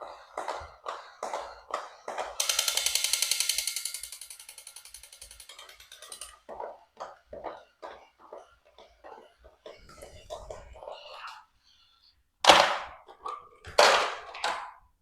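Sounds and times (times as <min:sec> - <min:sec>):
plastic toys clicking: 0:00.3 - 0:11.0
rapid ratcheting rattle: 0:02.4 - 0:06.8.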